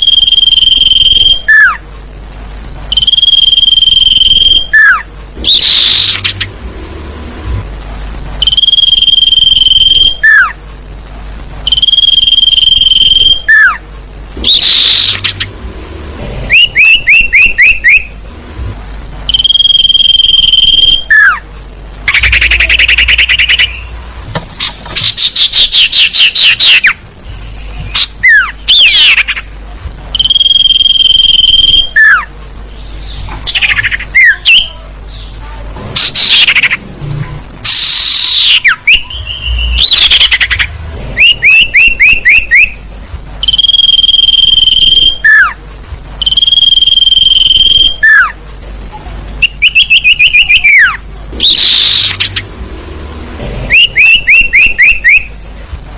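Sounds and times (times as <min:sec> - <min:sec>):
owl chirps and trills: 0:00.0 - 0:01.8, 0:02.9 - 0:06.5, 0:08.4 - 0:10.6, 0:11.7 - 0:13.8, 0:14.4 - 0:15.5, 0:16.5 - 0:18.2, 0:19.3 - 0:21.4, 0:22.1 - 0:24.0, 0:24.6 - 0:29.5, 0:30.2 - 0:32.3, 0:33.0 - 0:35.4, 0:36.0 - 0:36.8, 0:37.6 - 0:45.6, 0:46.2 - 0:48.4, 0:49.4 - 0:52.5, 0:53.7 - 0:55.5
owl whistled calls: 0:00.0 - 0:01.8, 0:02.9 - 0:06.5, 0:08.4 - 0:10.6, 0:11.7 - 0:13.8, 0:14.4 - 0:15.5, 0:16.5 - 0:18.2, 0:19.3 - 0:21.4, 0:22.1 - 0:23.9, 0:24.6 - 0:27.0, 0:27.9 - 0:29.4, 0:30.2 - 0:32.3, 0:33.5 - 0:34.8, 0:36.0 - 0:36.8, 0:37.6 - 0:42.8, 0:43.4 - 0:45.6, 0:46.2 - 0:48.4, 0:49.4 - 0:52.4, 0:53.7 - 0:55.3.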